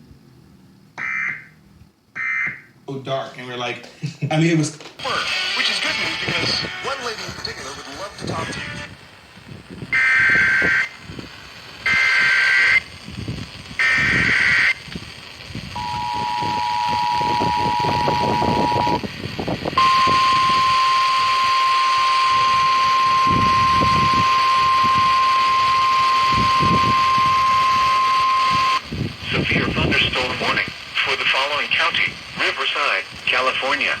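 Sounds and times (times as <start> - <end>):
steady alert tone: 1.0 - 1.5
two-tone attention signal: 1.0 - 1.5, 15.8 - 19.0, 19.8 - 28.8
digital data bursts: 1.0 - 1.6, 5.0 - 9.1, 9.8 - 34.0.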